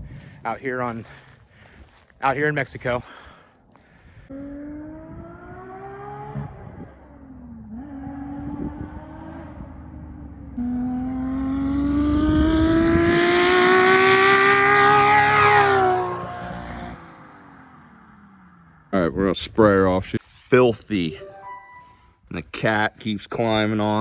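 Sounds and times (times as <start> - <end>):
car engine accelerating hard: 4.3 - 19.0.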